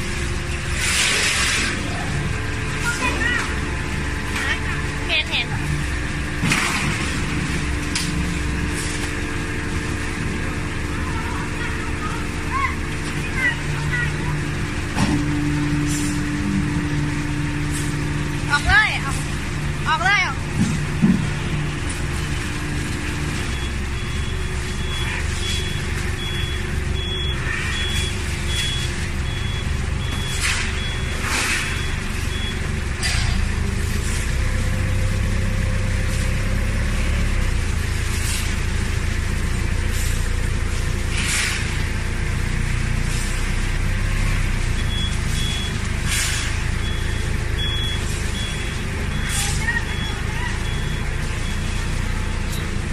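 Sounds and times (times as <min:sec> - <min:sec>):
hydraulic baler humming: 0:00.0 - 0:52.9
high warning beep: 0:23.4 - 0:32.7, 0:44.7 - 0:52.7.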